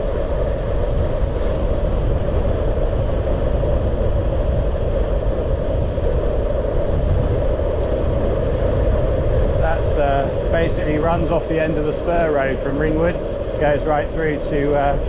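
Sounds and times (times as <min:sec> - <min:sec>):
bicycle tyres on road: 0:00.0 - 0:15.0
wind on microphone: 0:00.0 - 0:15.0.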